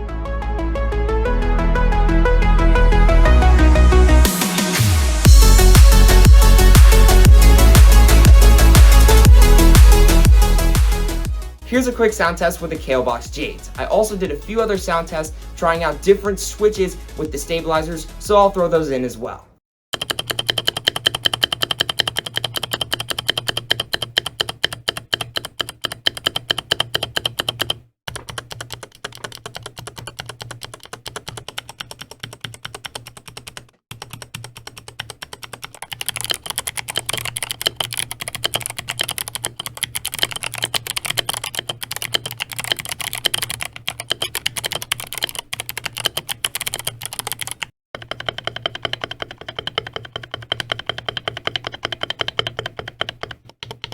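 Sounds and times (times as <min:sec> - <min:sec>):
mechanical keyboard typing: 0:20.0 - 0:53.9.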